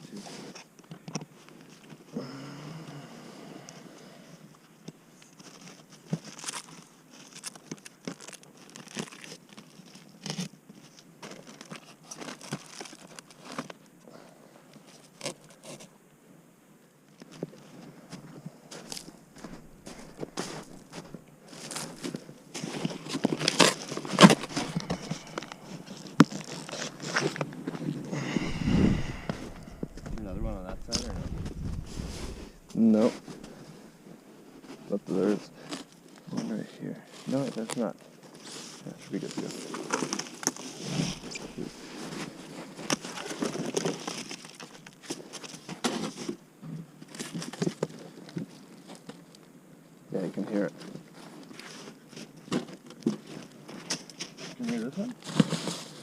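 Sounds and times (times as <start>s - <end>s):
rustling: 17.1s - 49.5s, 50.2s - 56.0s.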